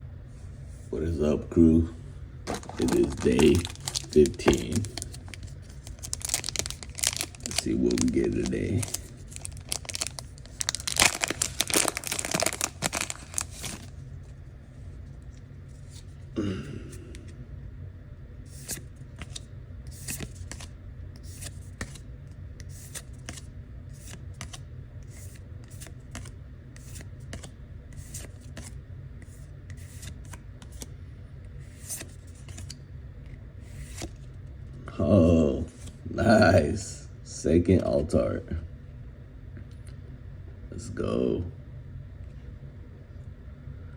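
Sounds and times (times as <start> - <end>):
steady low hum: 0.0 - 43.9
foil pack tearing and crinkling: 2.5 - 13.9.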